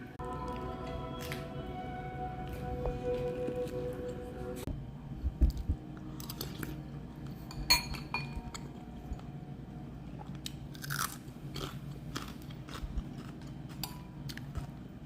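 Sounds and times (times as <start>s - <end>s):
utensils and dishware clinking: 6.2s - 9.3s.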